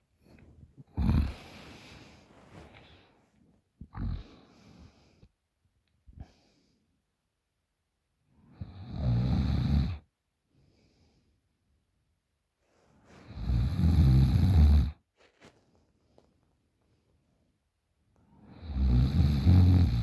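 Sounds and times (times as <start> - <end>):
woman snoring: 0.9 - 2.0, 3.9 - 4.5, 8.6 - 10.0, 13.3 - 14.9, 18.4 - 20.0.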